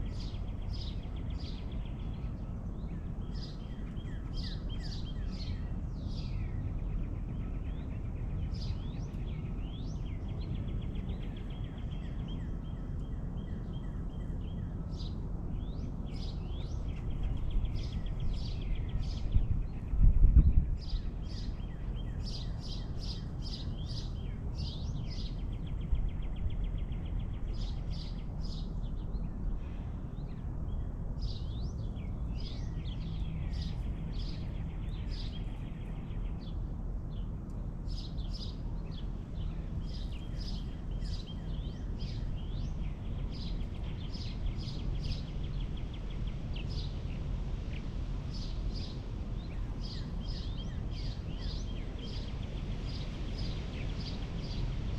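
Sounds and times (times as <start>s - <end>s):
low background rumble: 0.0s - 54.9s
small birds chirping: 0.0s - 54.9s.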